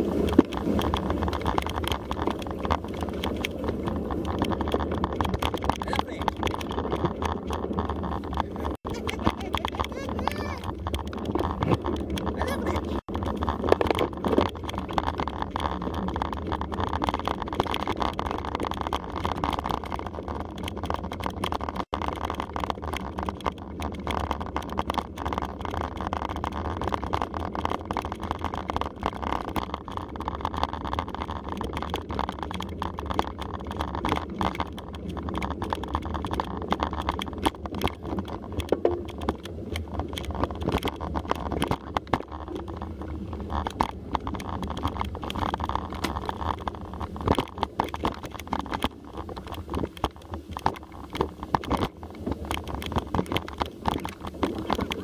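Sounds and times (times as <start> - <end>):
wind and tyre noise: 0.0 - 55.0
bike clattering and knocking: 0.2 - 42.9.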